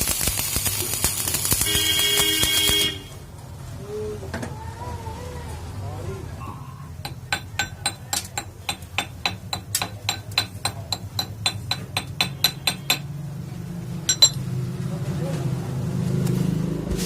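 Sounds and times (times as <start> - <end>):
hammer striking steel: 7.0 - 13.2, 14.1 - 14.4.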